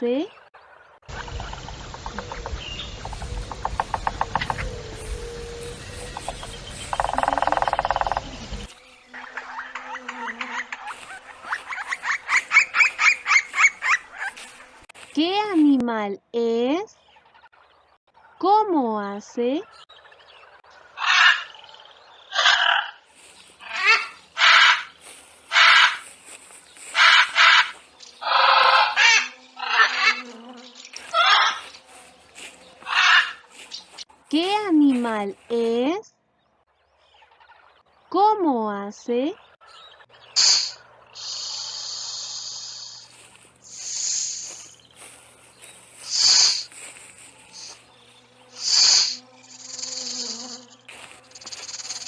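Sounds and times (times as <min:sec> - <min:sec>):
large bird harsh raspy calls: 0:01.1 - 0:14.8, 0:20.8 - 0:34.1, 0:39.6 - 0:50.6
snake hissing: 0:03.0 - 0:09.2, 0:10.3 - 0:15.6, 0:23.1 - 0:30.3, 0:31.0 - 0:35.6, 0:40.4 - 0:52.0.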